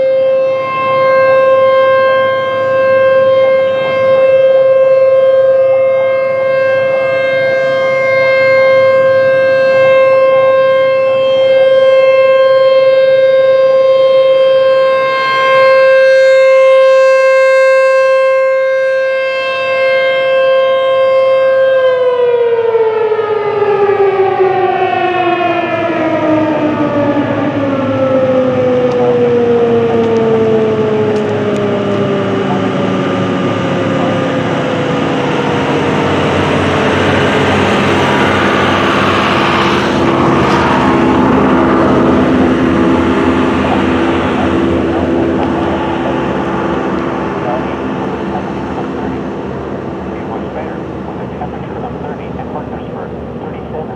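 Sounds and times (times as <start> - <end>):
tornado siren winding down: 0.0 - 53.9.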